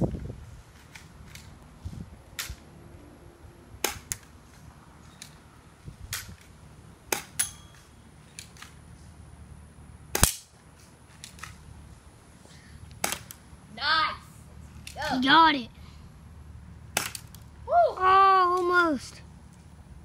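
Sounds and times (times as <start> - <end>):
airsoft pistol snaps: 10.2 - 10.5.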